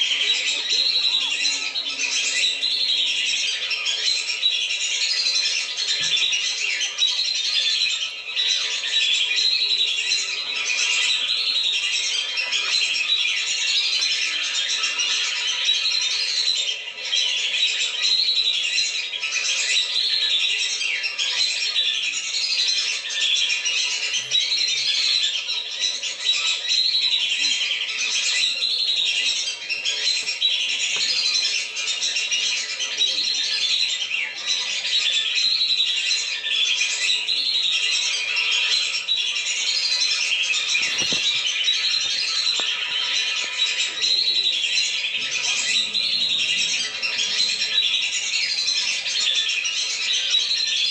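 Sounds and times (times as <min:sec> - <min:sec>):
ducks whistling: 0:23.9 - 0:50.9.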